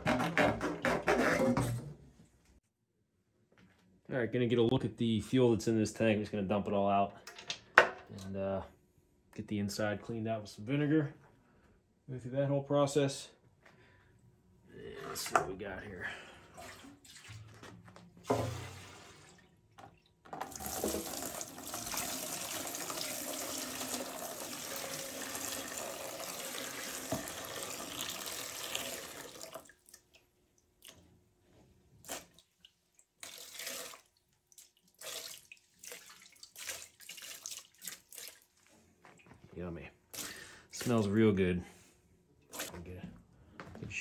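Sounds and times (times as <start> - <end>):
fuel dripping and splashing: 32.0 - 39.3.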